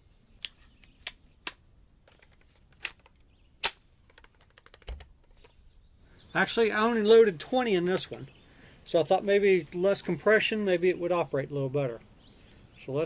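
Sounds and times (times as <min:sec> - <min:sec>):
rifle handling clicks: 0:00.4 - 0:05.5.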